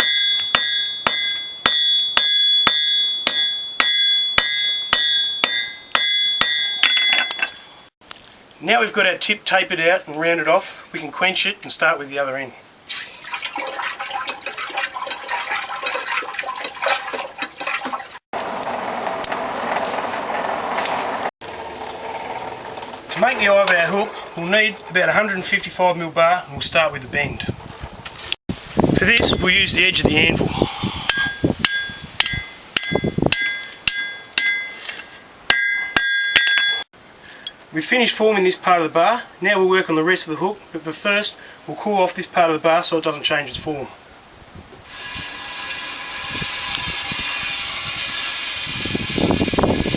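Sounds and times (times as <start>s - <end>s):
anvil ringing: 0.0s - 7.9s, 31.1s - 36.9s
hammer striking hot steel: 0.0s - 7.9s, 31.1s - 34.9s, 35.5s - 36.8s
hot metal sizzling in water: 44.8s - 49.9s.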